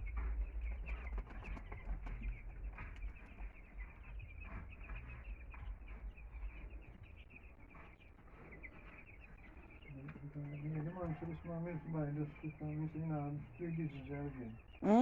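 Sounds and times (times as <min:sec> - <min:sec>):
low rumble: 0:00.0 - 0:07.2
chicks peeping: 0:00.0 - 0:15.0.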